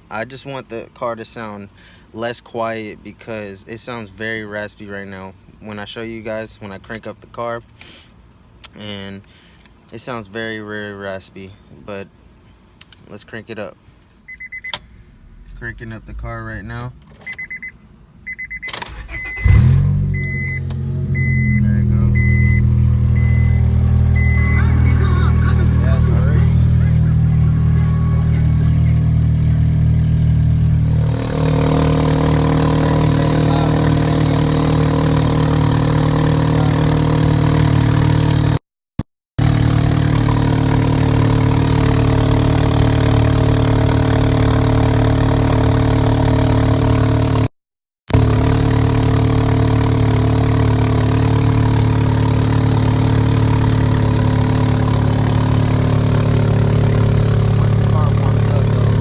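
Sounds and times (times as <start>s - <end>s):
raspy car engine idling: 18.9s - 38.6s, 39.4s - 47.4s, 48.1s - 59.0s.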